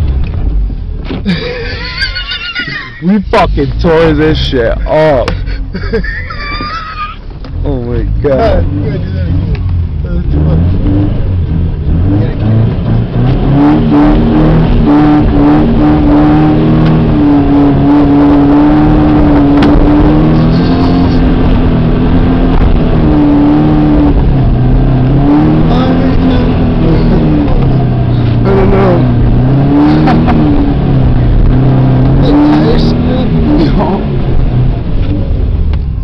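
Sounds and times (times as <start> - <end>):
car engine revving hard: 7.7 - 35.7.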